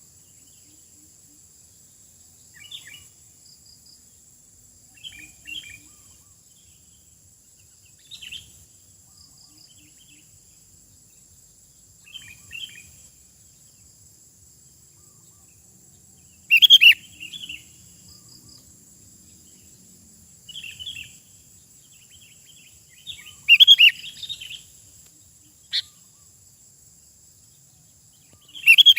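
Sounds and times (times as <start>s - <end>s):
bulbul singing: 16.5s - 18.3s, 21.9s - 24.7s, 28.3s - 28.9s.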